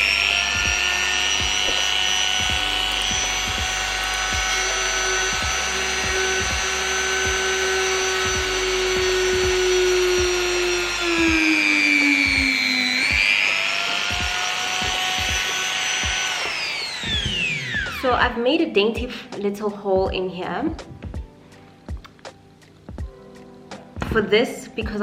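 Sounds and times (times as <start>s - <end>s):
rotary tool drilling wood: 0.0s - 18.2s
background music with beat: 0.6s - 11.6s, 12.3s - 16.2s, 20.0s - 24.2s.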